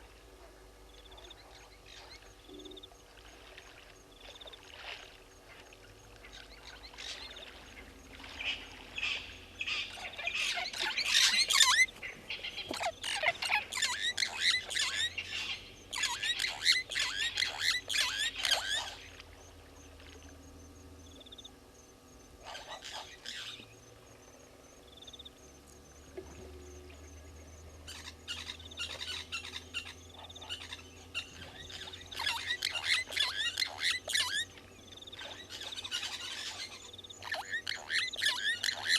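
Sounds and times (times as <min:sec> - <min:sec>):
birds chirping: 0:05.4 - 0:38.9.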